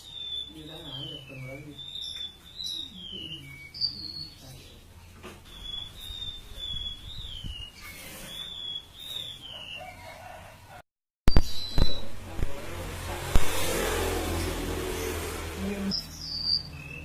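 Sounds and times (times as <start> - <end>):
songbird whistling: 0.0 - 4.4, 5.4 - 10.2, 11.3 - 12.1, 15.9 - 17.0.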